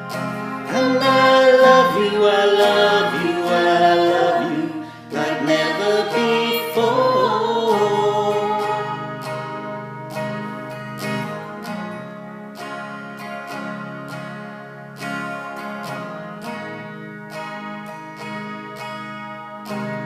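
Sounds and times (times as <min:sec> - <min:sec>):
person singing slow ballad: 0:00.0 - 0:10.4
acoustic guitar: 0:00.0 - 0:20.0.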